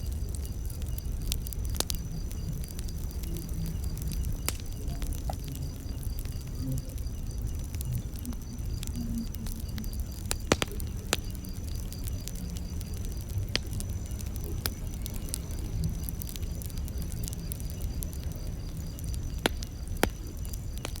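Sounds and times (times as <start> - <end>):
rumble of campfire flames: 0.0 - 21.0.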